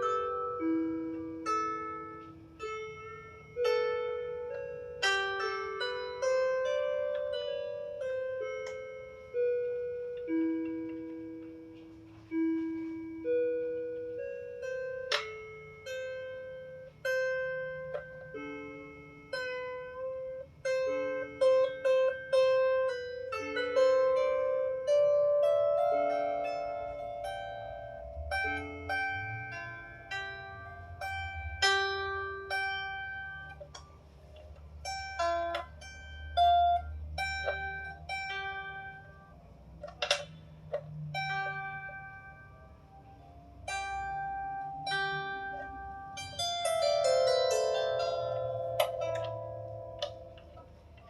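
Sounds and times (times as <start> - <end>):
harp strings plucked: 13.8 - 42.6, 43.7 - 51.0.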